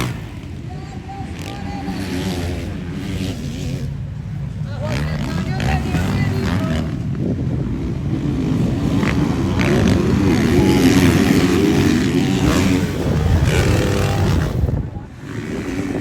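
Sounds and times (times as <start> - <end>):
motocross engines running hard: 0.0 - 16.0.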